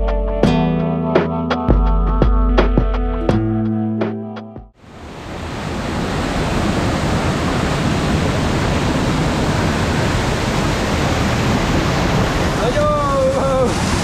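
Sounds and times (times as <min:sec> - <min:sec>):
guitar music: 0:00.0 - 0:04.8
rushing water roar: 0:04.8 - 0:14.0.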